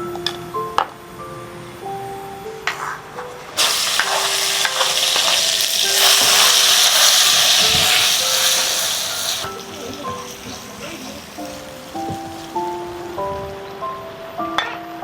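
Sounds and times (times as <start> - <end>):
food sizzling in hot oil: 3.6 - 13.2.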